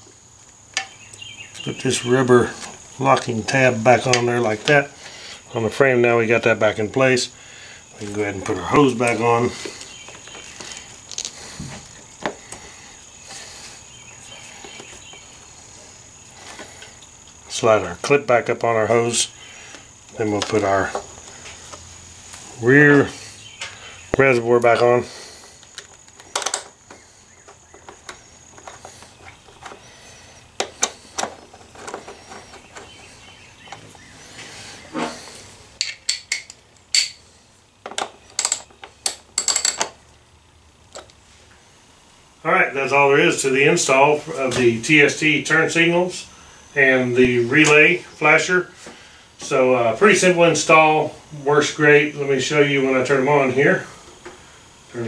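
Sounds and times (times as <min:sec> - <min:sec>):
faint handling noises: 0:07.9 - 0:40.2
metallic clicks of hand tools: 0:35.8 - 0:37.2.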